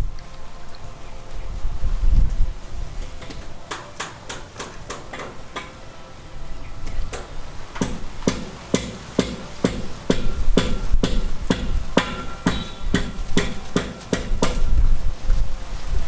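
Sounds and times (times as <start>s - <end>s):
hammer blows: 3.0s - 6.0s, 7.1s - 15.0s.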